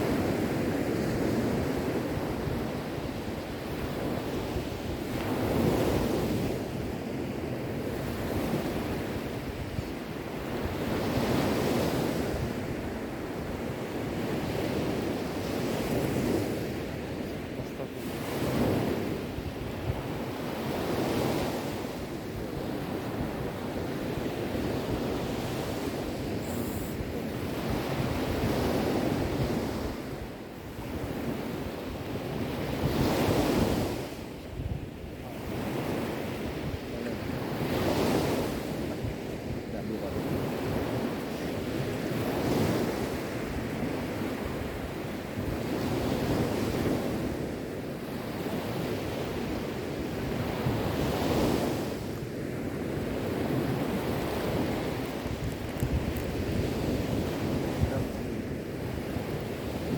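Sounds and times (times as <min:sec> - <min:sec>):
sea waves washing on shore: 0:00.0 - 0:59.9.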